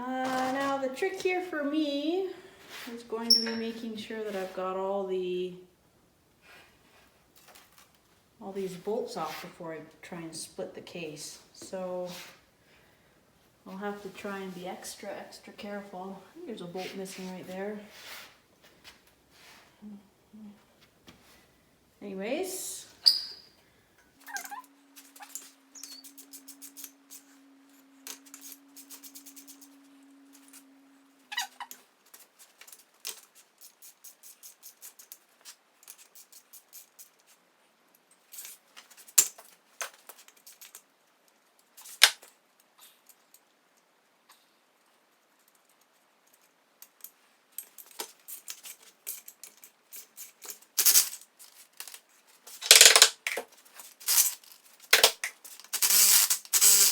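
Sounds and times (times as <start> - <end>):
faint steady hum: 0.0 - 35.4.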